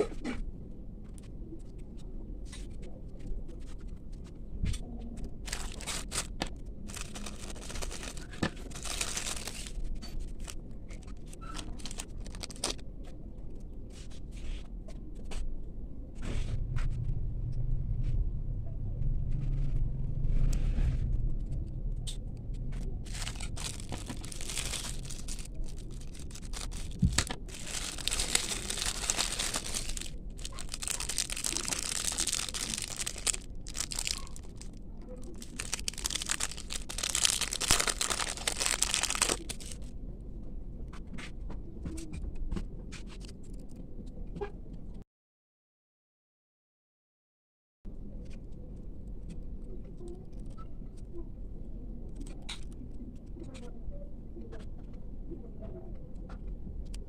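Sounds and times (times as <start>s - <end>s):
packaging crinkling and tearing: 5.4s - 12.8s, 23.0s - 39.9s.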